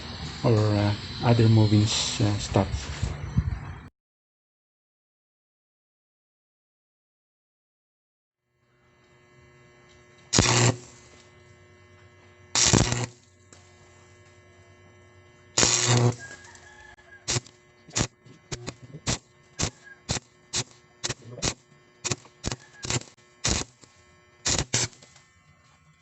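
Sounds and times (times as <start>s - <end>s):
welder arc crackling: 0.0s - 3.2s, 8.6s - 26.0s
steady electrical hum: 0.0s - 3.9s, 8.6s - 26.0s.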